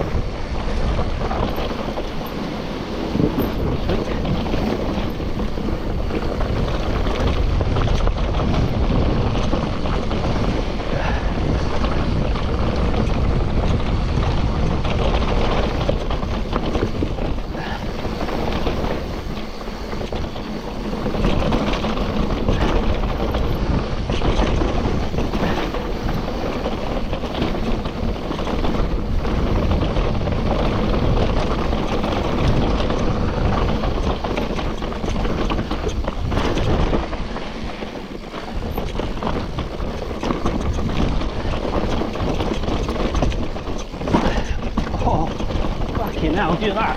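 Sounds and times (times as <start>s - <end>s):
bike rattling over rough ground: 0.0s - 46.9s
bike tyre noise: 0.0s - 46.9s
wind rushing over microphone: 0.0s - 46.9s.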